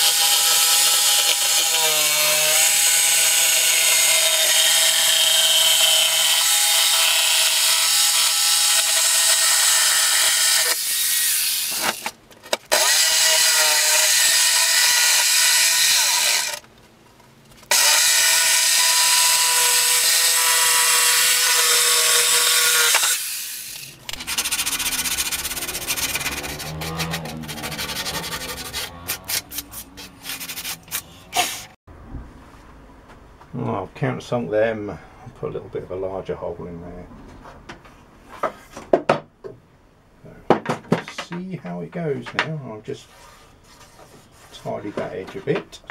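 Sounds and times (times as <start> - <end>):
power tool cutting: 0.0 - 12.1, 12.7 - 16.6, 17.7 - 29.6.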